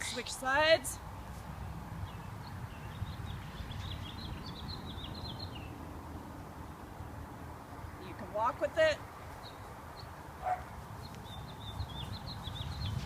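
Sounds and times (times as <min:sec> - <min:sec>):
small bird twittering: 0:11.0 - 0:13.0.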